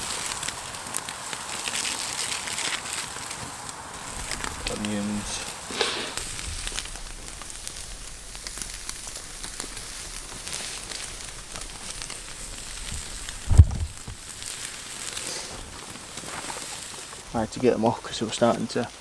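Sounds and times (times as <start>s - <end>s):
campfire crackling and hissing: 0.0s - 19.0s
faint pops: 3.3s - 16.7s
dull low thump: 6.2s - 14.3s.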